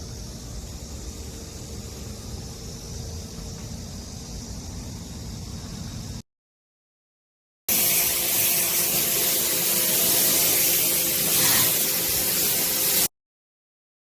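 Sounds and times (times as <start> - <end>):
pressure washer spray hiss: 7.7 - 13.1.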